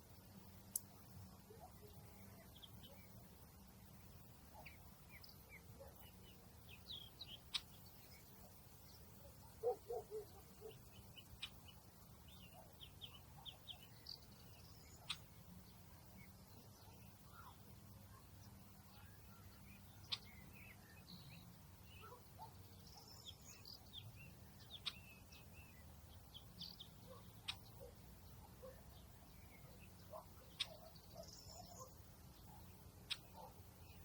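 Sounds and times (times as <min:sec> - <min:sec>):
birds chirping: 0:00.0 - 0:34.0.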